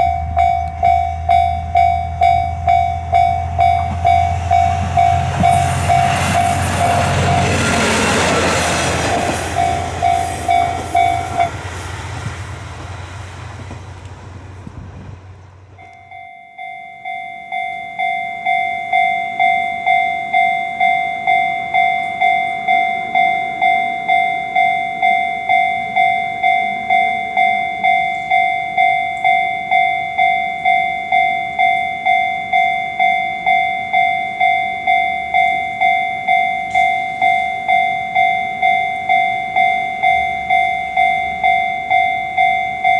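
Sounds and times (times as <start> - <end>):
level crossing warning bell: 0.0 - 12.3, 15.7 - 42.9
train rumble: 0.0 - 16.2.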